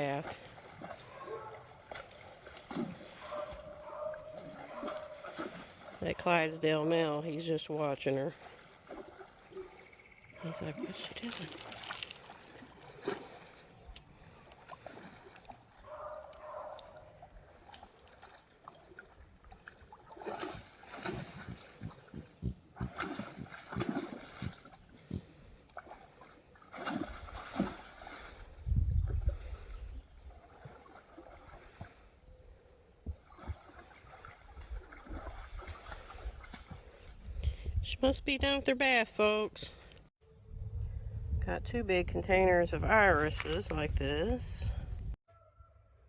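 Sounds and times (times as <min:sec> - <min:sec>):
animal splashing in water: 0:00.0 - 0:06.8, 0:08.1 - 0:32.2, 0:32.8 - 0:37.2.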